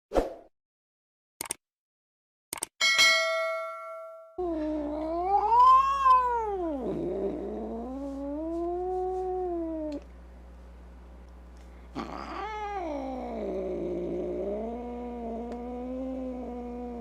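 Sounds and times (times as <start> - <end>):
angry cat yowling: 4.4 - 10.0, 12.0 - 17.0
steady low hum: 4.4 - 17.0.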